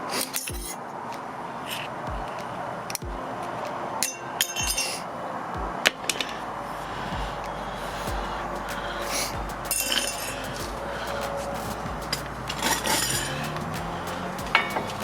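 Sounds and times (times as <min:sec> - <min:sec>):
low thuds: 0:07.1 - 0:15.0.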